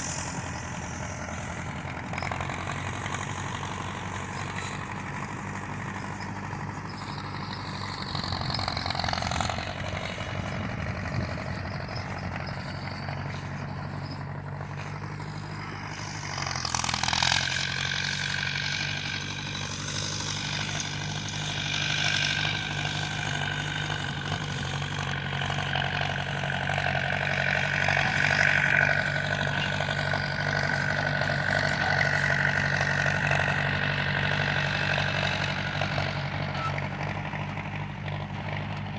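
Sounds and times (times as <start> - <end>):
steady higher whine: 0.0 - 16.9
tractor engine running: 0.0 - 38.9.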